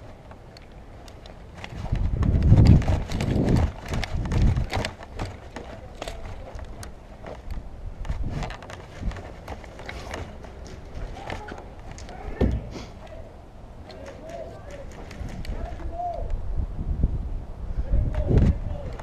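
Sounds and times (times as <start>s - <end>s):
sharp clicks and rattles: 0.0s - 12.2s, 13.8s - 15.8s
running footsteps: 0.0s - 13.0s, 13.9s - 16.0s.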